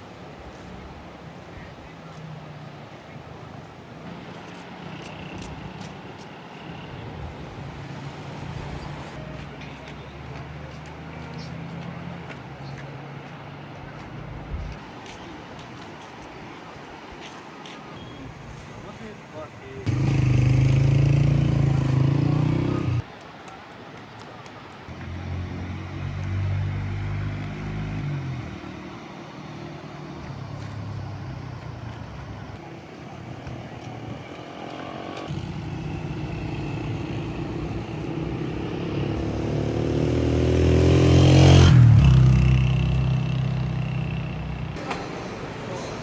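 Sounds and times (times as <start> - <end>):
vehicles passing close by: 0.0 - 15.6, 17.7 - 23.2, 24.6 - 46.0
river flowing: 0.0 - 41.6
vehicle engine passing: 19.9 - 23.0, 24.9 - 46.0.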